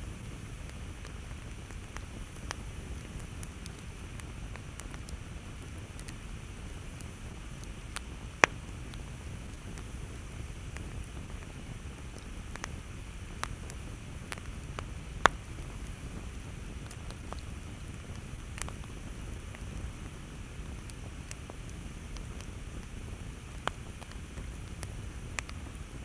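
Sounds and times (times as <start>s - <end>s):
campfire crackling and popping: 0.0s - 26.0s.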